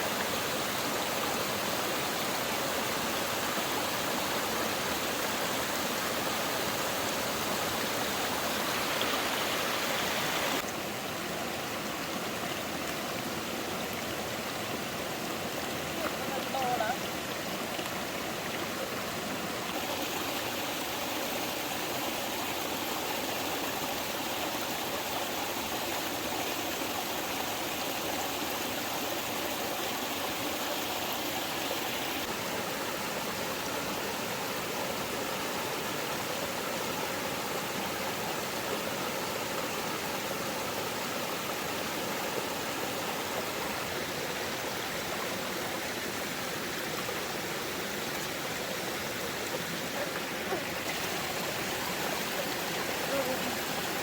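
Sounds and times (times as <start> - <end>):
water rushing: 0.0 - 54.0.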